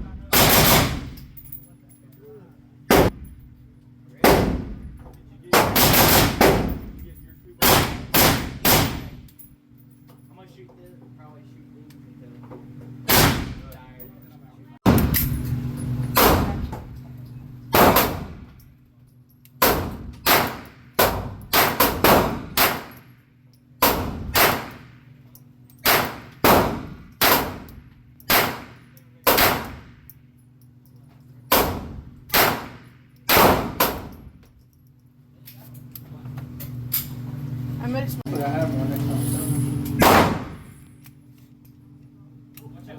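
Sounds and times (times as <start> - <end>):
gunshots with ringing echo: 40.0 - 40.6.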